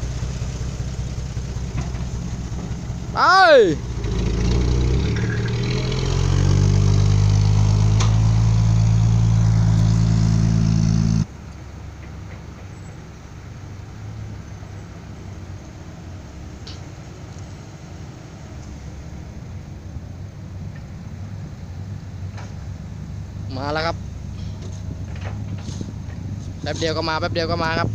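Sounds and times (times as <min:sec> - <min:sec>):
diesel truck engine revving: 0:00.0 - 0:11.3.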